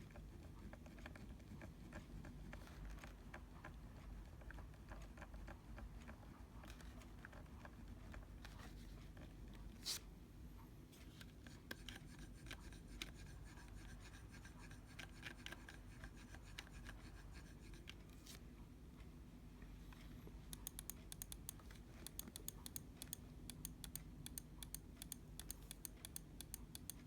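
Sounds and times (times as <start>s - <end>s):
computer mouse clicking: 11.2s - 13.3s, 20.5s - 27.0s.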